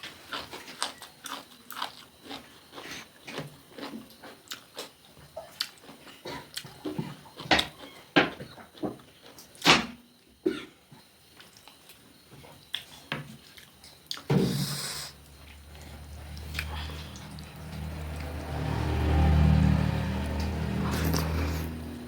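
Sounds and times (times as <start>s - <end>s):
chewing and lip smacks: 0.3s - 6.9s.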